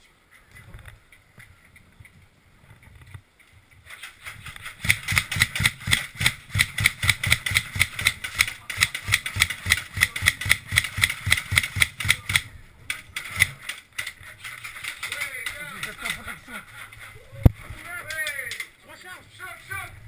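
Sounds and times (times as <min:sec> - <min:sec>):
gear rattling: 0:03.8 - 0:17.2.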